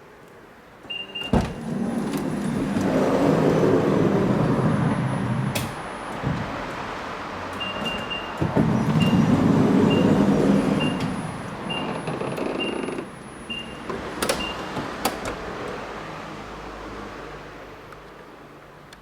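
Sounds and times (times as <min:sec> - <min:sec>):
door clunks: 0:00.8 - 0:03.2, 0:05.4 - 0:15.8
sliding door motor and rollers: 0:00.8 - 0:16.4.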